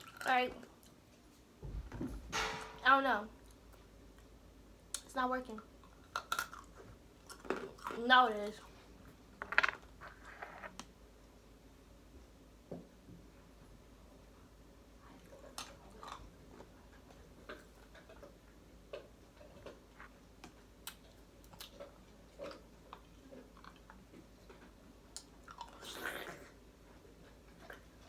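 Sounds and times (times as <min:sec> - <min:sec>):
person chewing crunchy food: 0:05.8 - 0:08.0, 0:15.4 - 0:26.5.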